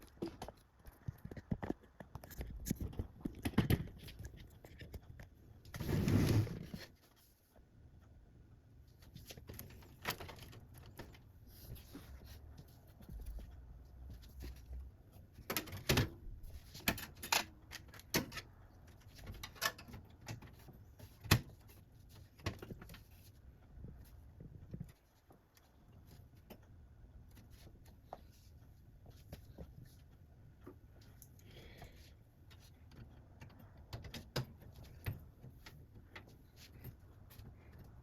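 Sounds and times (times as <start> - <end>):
computer parts clicking and knocking: 0.0 - 5.4, 14.2 - 23.2, 32.5 - 36.3.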